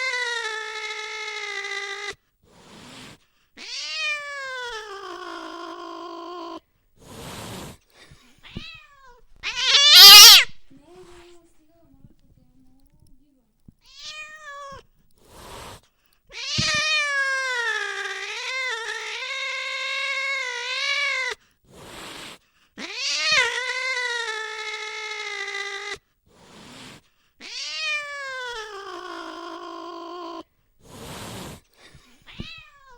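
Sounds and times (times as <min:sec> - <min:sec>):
cat yowling: 0:00.0 - 0:02.2, 0:03.6 - 0:06.6, 0:08.4 - 0:10.7, 0:13.8 - 0:14.9, 0:16.3 - 0:21.4, 0:22.8 - 0:26.0, 0:27.4 - 0:30.4, 0:32.3 - 0:32.9
cat hissing: 0:00.0 - 0:11.3, 0:13.8 - 0:32.9.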